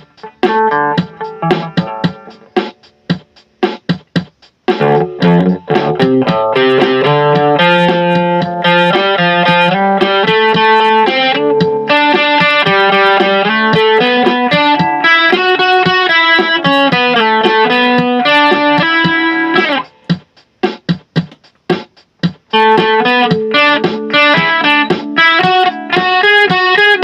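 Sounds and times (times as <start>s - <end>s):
electric guitar playing: 0.0s - 3.2s, 4.7s - 20.2s, 22.5s - 27.0s.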